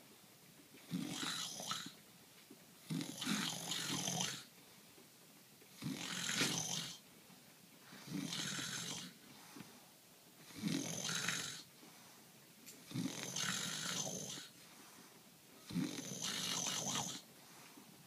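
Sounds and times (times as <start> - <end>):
man snoring: 0.9 - 2.0, 2.9 - 4.4, 5.8 - 7.0, 8.0 - 9.2, 10.5 - 11.7, 12.9 - 14.5, 15.7 - 17.2.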